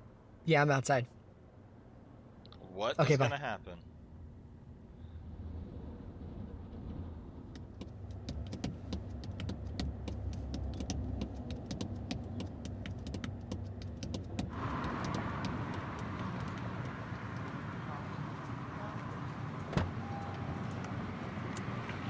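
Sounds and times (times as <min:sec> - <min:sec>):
car engine running: 0:07.6 - 0:18.7.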